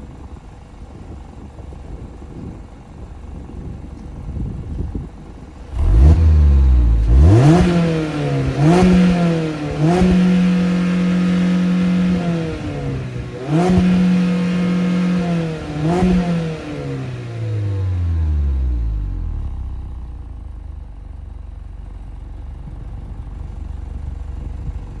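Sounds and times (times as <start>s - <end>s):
car engine idling: 0.0s - 25.0s
car engine revving to limiter: 5.6s - 20.2s.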